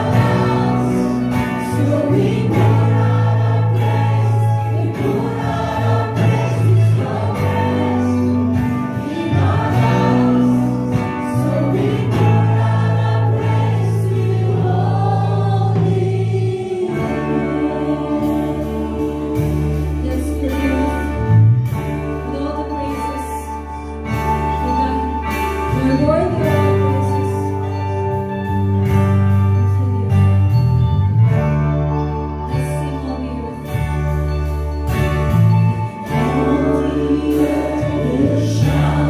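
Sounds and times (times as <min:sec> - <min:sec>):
band playing gospel song: 0:00.0 - 0:39.0.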